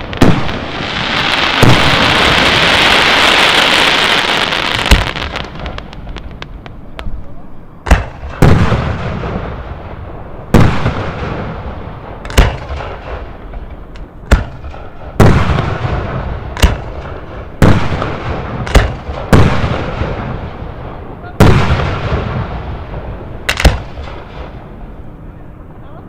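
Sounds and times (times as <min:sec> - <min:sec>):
echoing rumble and crackle: 0:04.4 - 0:25.9
firework shells bursting: 0:12.1 - 0:19.6, 0:23.5 - 0:24.6.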